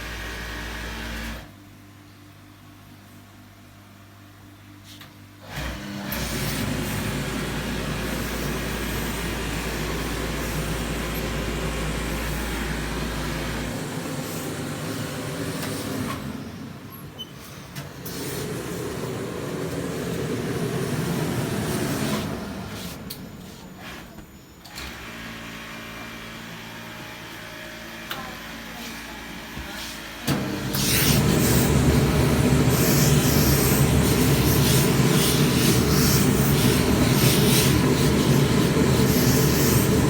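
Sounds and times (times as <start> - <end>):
industrial sewing machine running: 0.0 - 1.5, 5.4 - 16.9, 18.0 - 22.8, 30.3 - 40.0.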